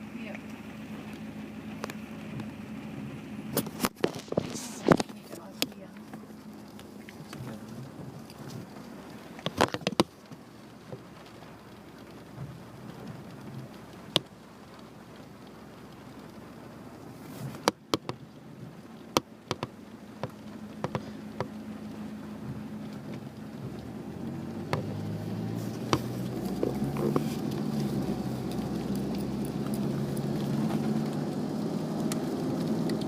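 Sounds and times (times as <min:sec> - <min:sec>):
rain falling: 0:00.0 - 0:33.0.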